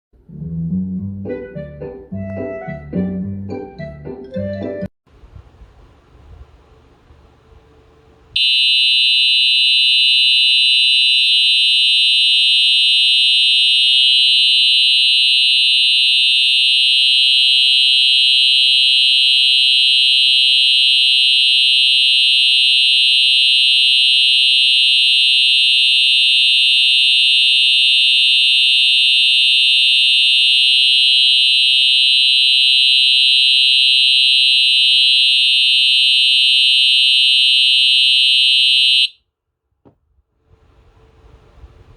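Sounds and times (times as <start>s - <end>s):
fire alarm horn high-pitched tone: 8.4s - 39.2s.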